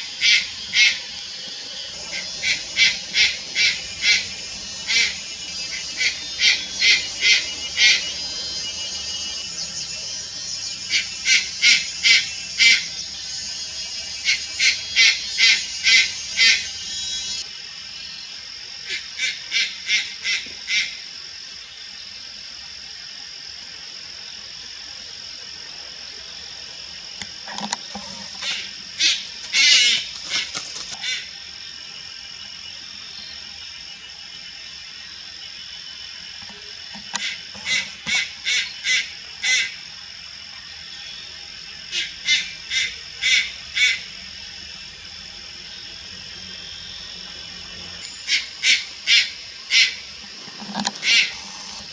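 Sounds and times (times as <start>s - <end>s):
night heron calling: 0.0s - 17.4s, 26.3s - 32.4s, 35.9s - 51.9s
high-pitched whine: 0.0s - 18.2s.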